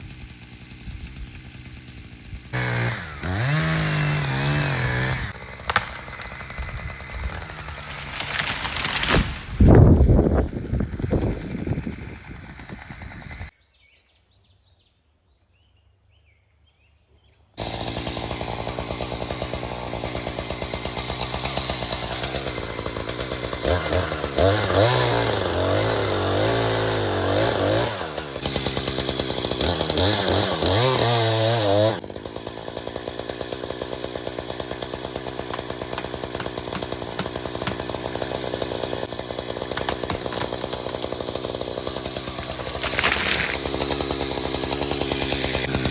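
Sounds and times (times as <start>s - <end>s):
chainsaw engine running: 0.0s - 13.5s, 17.6s - 45.9s.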